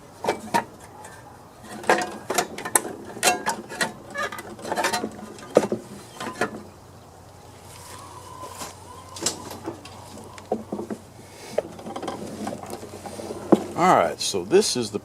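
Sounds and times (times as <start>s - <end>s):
plastic and metal parts clattering: 0.2s - 6.6s, 11.6s - 13.8s.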